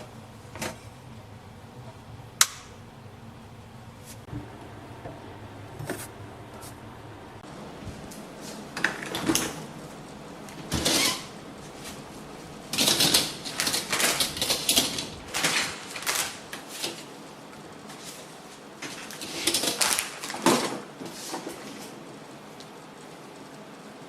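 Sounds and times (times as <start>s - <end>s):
hard objects clicking and knocking: 12.7s - 16.2s.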